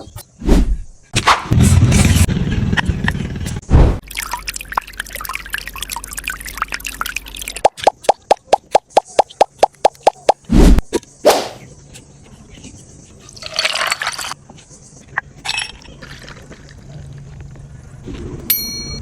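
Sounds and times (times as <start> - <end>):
liquid pouring: 4.0 - 8.3, 13.4 - 14.4, 15.7 - 16.8.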